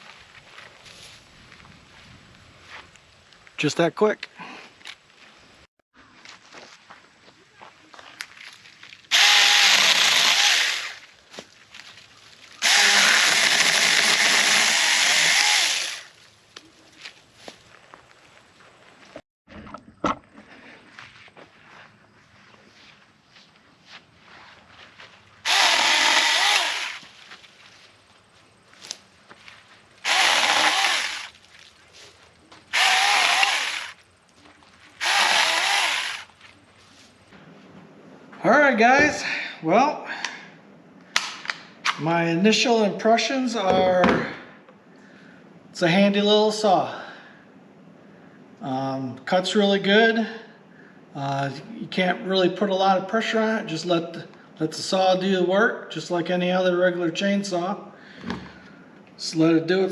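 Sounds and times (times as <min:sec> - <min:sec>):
electric chainsaw cutting branches: 0:09.1 - 0:11.0, 0:12.6 - 0:16.1, 0:25.5 - 0:27.1, 0:30.0 - 0:31.4, 0:32.7 - 0:34.0, 0:35.0 - 0:36.3.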